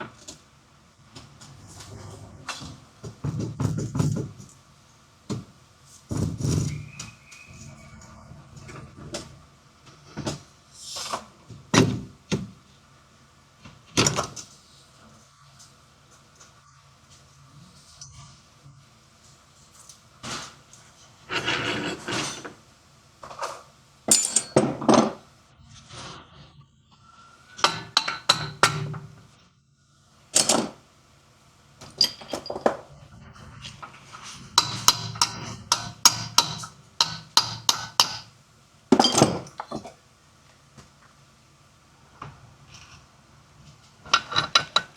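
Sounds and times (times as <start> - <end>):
hand tools clanking on metal: 24.1 - 25.2, 27.6 - 29.1, 34.6 - 38.3, 38.9 - 39.9, 44.0 - 44.9.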